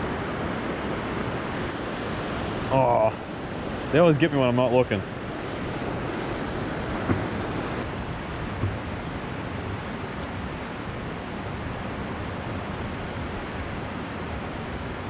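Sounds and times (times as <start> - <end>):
river water rushing: 0.0 - 15.0
wind: 0.0 - 15.0
low bumps: 6.9 - 7.5.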